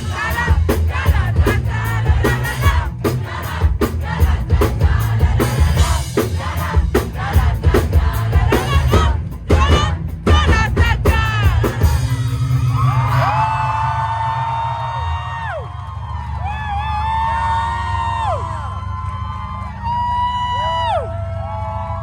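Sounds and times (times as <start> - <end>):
drum kit: 0.0 - 15.6
crowd voices: 0.0 - 22.0
heavy bass: 0.0 - 22.0.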